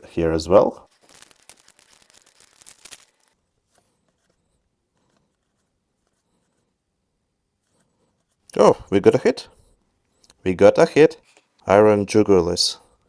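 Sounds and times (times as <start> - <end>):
trading cards crinkling and rustling: 0.9 - 3.4.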